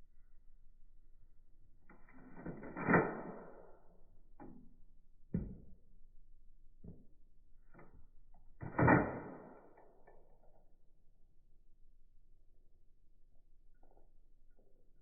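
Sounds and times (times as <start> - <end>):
toy pistol shot: 2.7 - 3.6, 8.6 - 9.8.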